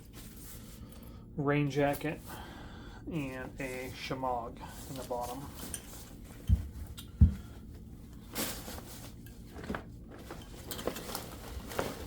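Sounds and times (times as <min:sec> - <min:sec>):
fabric and gear rustling: 0:03.2 - 0:06.9, 0:07.5 - 0:12.0.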